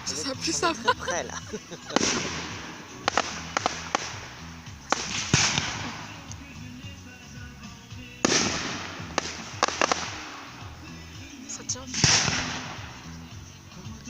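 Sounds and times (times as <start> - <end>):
fireworks bangs with rumble: 1.8 - 6.2, 8.2 - 10.8, 11.9 - 13.1.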